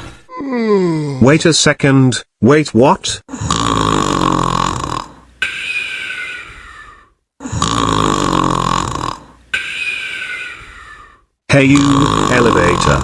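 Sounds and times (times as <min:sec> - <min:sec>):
cartoon rasping snore: 0:03.3 - 0:10.7, 0:11.6 - 0:13.0.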